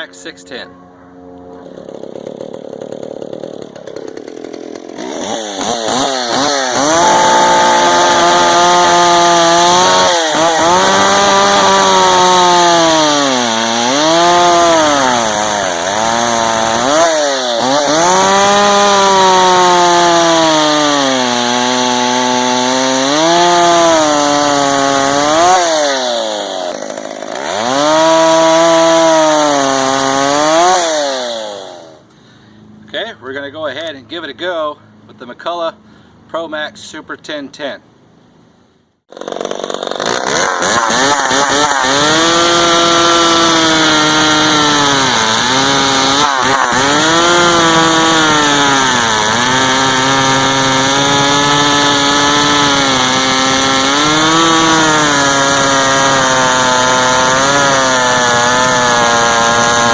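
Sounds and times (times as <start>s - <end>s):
chainsaw cutting wood: 1.6s - 32.1s, 39.1s - 59.9s.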